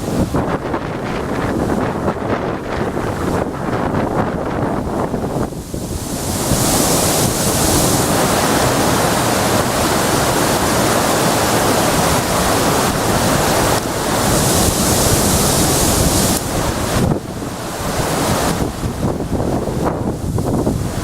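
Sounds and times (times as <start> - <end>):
river water pouring over weir: 0.0 - 21.0.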